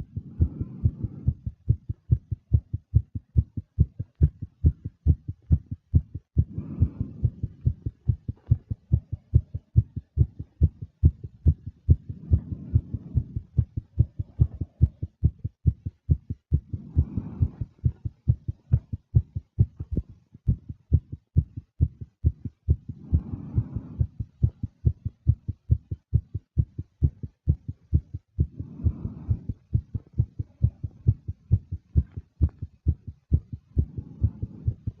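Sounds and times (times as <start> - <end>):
woman breathing: 0.0 - 1.8, 6.0 - 8.7, 11.8 - 15.0, 16.5 - 18.4, 22.7 - 25.0, 28.4 - 31.3, 33.5 - 35.0
fast heartbeat: 0.0 - 35.0.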